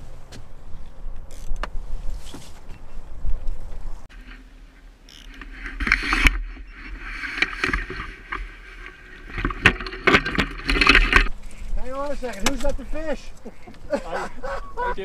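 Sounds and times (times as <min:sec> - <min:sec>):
wind: 0:00.0 - 0:15.0
water around a boat: 0:01.2 - 0:12.3.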